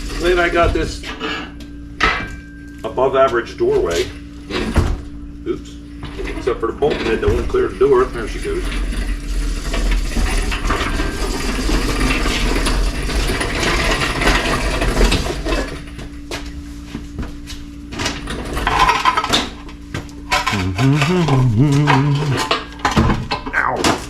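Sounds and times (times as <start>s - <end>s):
metal cart rattling and clattering: 6.1s - 15.9s
low wavering tone: 20.3s - 22.6s.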